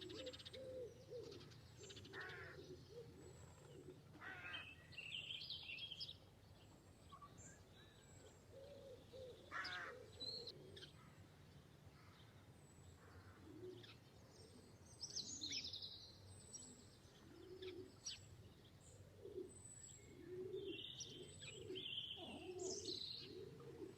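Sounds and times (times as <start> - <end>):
birds cooing: 0.0 - 4.7, 8.0 - 11.1, 13.0 - 14.8, 17.1 - 23.9.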